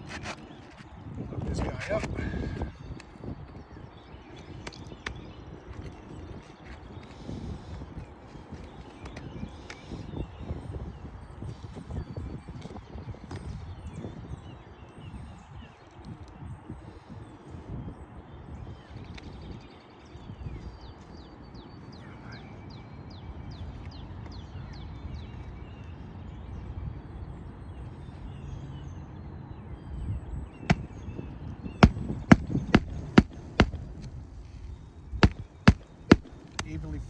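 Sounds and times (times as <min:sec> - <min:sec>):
hammer striking roofing nails: 0:30.7 - 0:30.9, 0:31.8 - 0:34.2, 0:35.2 - 0:37.0.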